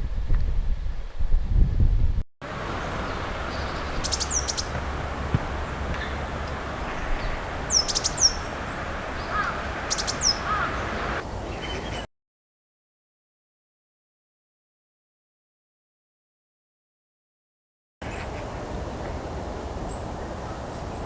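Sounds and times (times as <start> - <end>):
outdoor background noise: 0.0 - 12.1, 18.0 - 21.0
bird calling high thin notes: 2.8 - 12.1.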